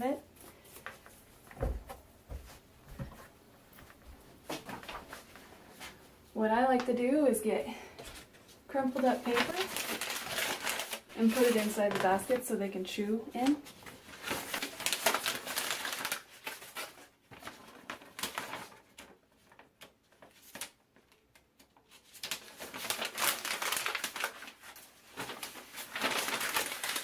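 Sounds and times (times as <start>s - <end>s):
paper crumpling: 8.1s - 12.4s, 13.4s - 27.0s.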